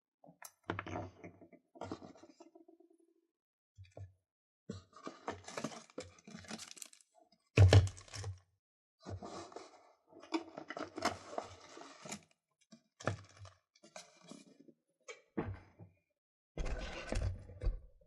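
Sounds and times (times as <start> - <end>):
packaging rustling and tearing: 6.4 - 7.0.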